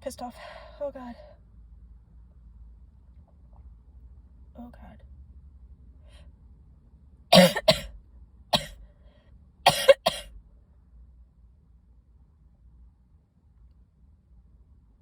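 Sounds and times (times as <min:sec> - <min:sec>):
woman coughing: 0:07.3 - 0:07.9, 0:09.7 - 0:10.3.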